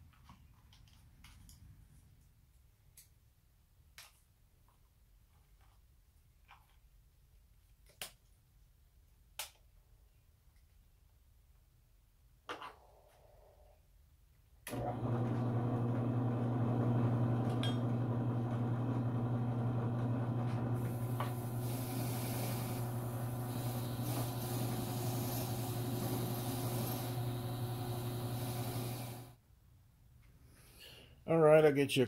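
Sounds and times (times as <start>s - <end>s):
electric motor humming: 14.7s - 29.4s.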